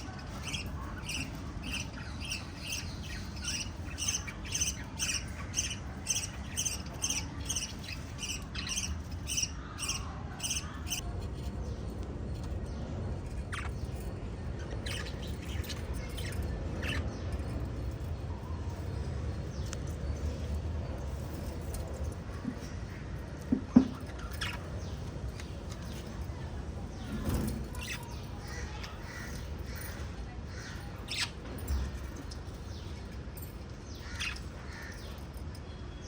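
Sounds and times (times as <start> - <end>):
lovebirds chirping: 0.0 - 36.0.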